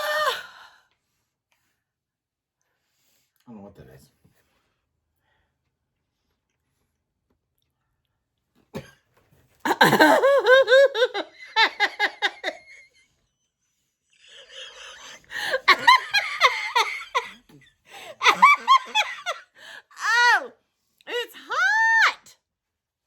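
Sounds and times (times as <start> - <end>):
person laughing hard: 9.7 - 12.8, 14.4 - 20.3.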